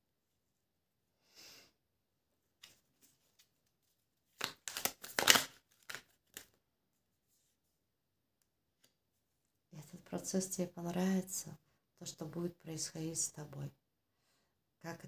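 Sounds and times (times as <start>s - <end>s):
cards riffling and snapping: 4.3s - 6.6s.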